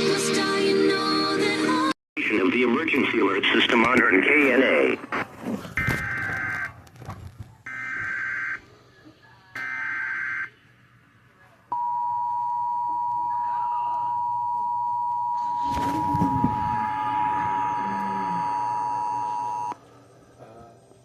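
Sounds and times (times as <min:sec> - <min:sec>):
two-tone attention signal: 0:11.8 - 0:19.8
buzzing data screech: 0:15.4 - 0:19.8.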